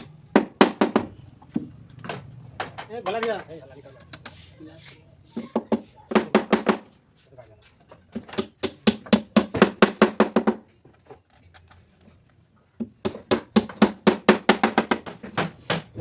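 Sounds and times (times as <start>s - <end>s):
hammer tapping on wood: 5.4s - 6.9s, 8.2s - 10.6s.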